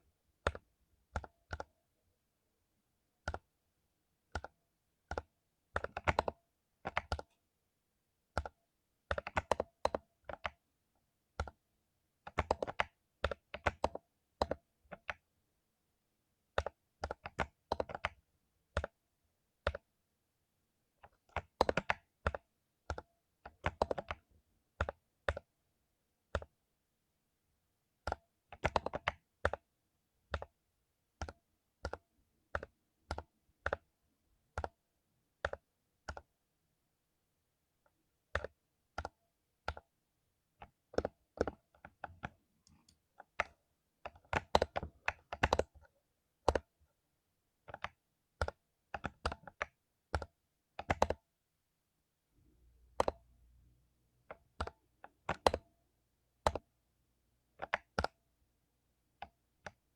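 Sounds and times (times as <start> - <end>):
mechanical keyboard typing: 0.4 - 1.8, 3.2 - 3.5, 4.3 - 7.4, 8.3 - 10.6, 12.3 - 15.2, 16.6 - 19.0, 21.0 - 25.5, 28.1 - 29.7, 31.2 - 33.9, 35.4 - 36.4, 38.3 - 39.9, 40.6 - 46.8, 47.6 - 51.3, 52.9 - 53.2, 54.3 - 55.7, 56.4 - 56.7, 57.6 - 58.2.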